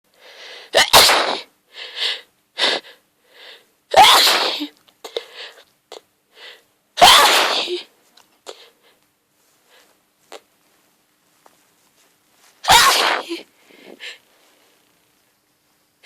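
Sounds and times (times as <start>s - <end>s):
woman sneezing: 0.8s - 1.5s, 3.9s - 5.3s, 7.0s - 7.9s, 12.6s - 13.5s.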